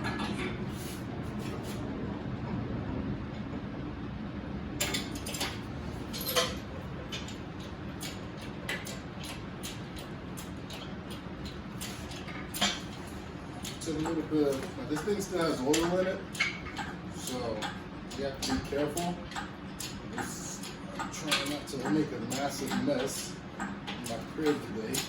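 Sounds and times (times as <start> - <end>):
steady background noise: 0.0 - 25.0
metallic clinks and knocks: 4.8 - 7.4.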